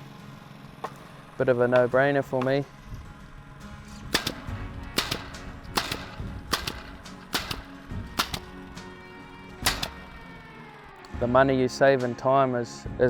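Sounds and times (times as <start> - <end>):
pneumatic stapler firing: 4.0 - 9.0, 9.6 - 10.6.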